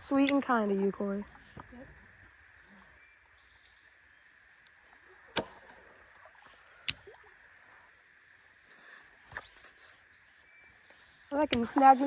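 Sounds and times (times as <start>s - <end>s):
sharp clicks: 0.0s - 0.6s.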